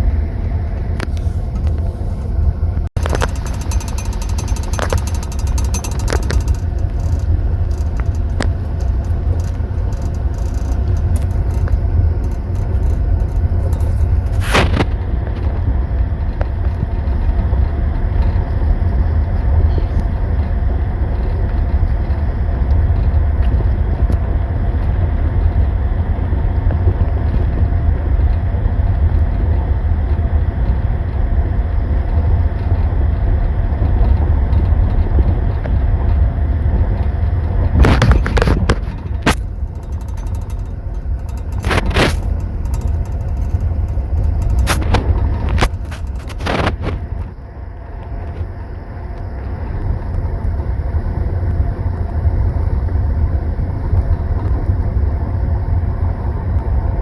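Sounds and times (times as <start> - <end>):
train rumbling on track: 0.0 - 57.0.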